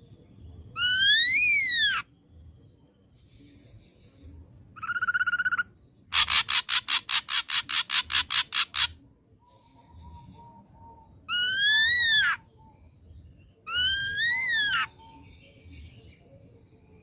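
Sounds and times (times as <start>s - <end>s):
drongo calling: 4.8s - 12.8s, 13.7s - 15.2s.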